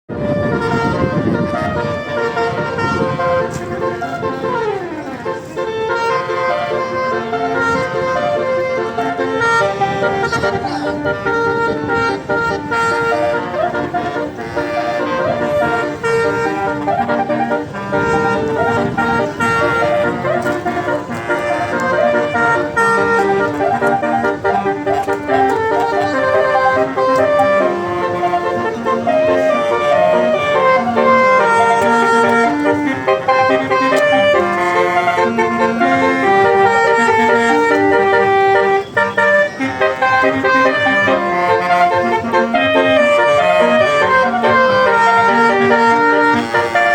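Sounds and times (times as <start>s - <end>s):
bus air horns playing a tune: 0.1s - 46.9s.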